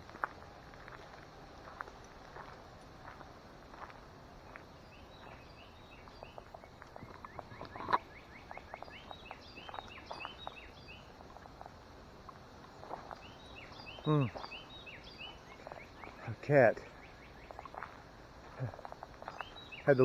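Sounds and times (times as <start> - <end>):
footsteps crunching on trail: 0.0 - 20.0
bird chirping: 4.8 - 11.5, 12.7 - 20.0.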